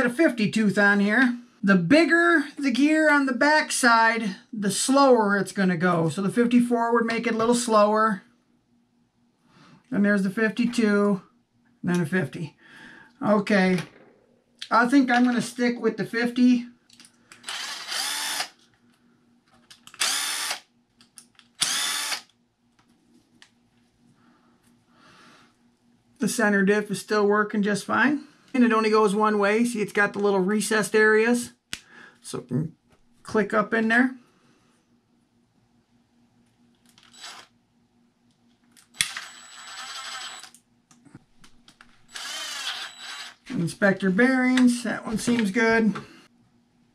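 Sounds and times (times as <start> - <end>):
power drill motor whine: 17.4 - 18.6, 20.0 - 20.6, 21.6 - 22.3, 37.0 - 37.5, 38.9 - 40.6, 42.1 - 43.5.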